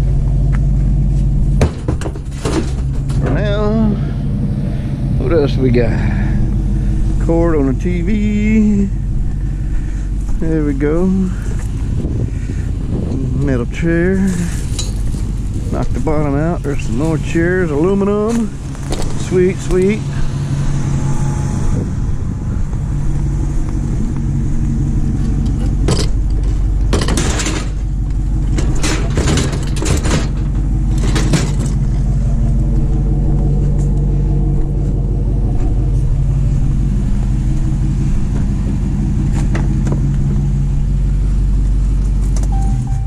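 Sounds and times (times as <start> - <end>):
vehicle engine and road noise: 0.0 - 43.0
clattering knocks: 1.6 - 3.4, 25.5 - 31.9.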